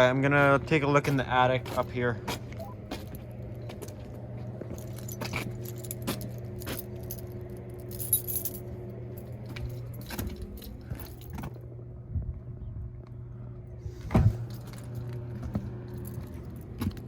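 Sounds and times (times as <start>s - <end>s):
low hum: 0.0s - 17.0s
keys jangling: 4.6s - 11.6s, 15.9s - 17.0s.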